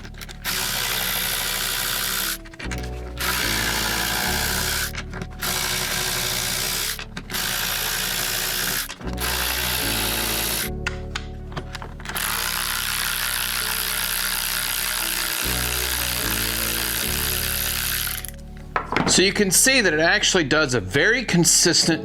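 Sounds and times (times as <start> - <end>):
electric ratchet whirring: 0.0 - 10.8, 11.7 - 18.4.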